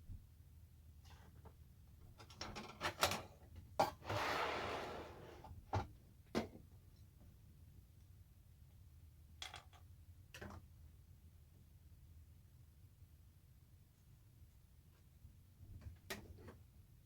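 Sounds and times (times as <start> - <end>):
wood scraping and sliding: 4.0 - 5.5.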